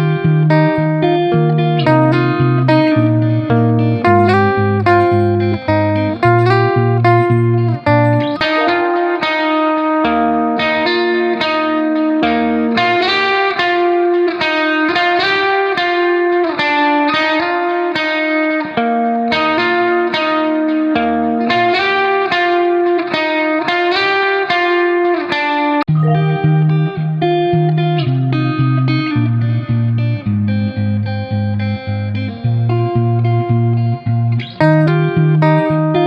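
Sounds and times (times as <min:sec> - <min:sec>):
bass line: 0:00.0 - 0:09.0, 0:25.9 - 0:27.4
picked electric guitar: 0:00.0 - 0:36.0.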